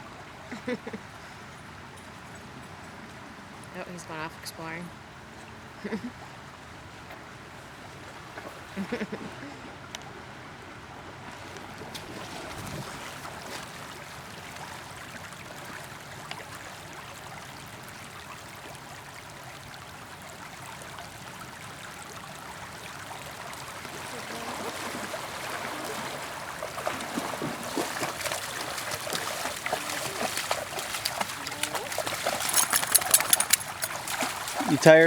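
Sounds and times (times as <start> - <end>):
river water rushing: 23.5 - 35.0.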